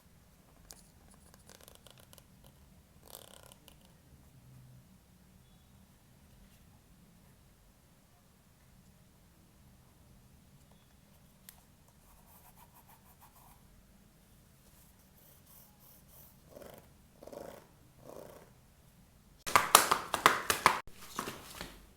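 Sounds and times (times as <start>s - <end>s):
packaging crinkling and scratching: 19.5s - 21.9s.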